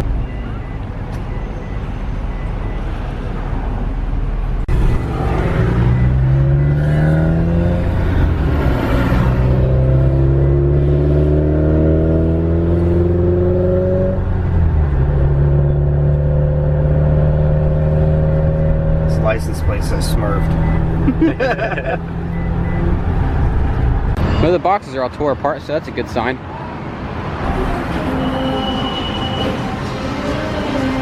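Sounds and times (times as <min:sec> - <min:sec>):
car engine accelerating: 0:04.6 - 0:24.2.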